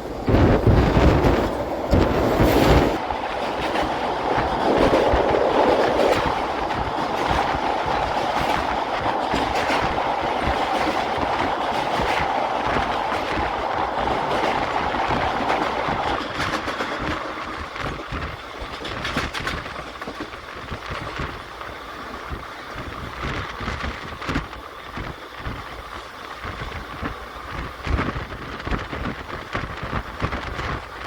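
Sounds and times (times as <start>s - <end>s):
low train rumble: 0.0s - 31.0s
train wheels clattering over rails: 0.0s - 31.0s.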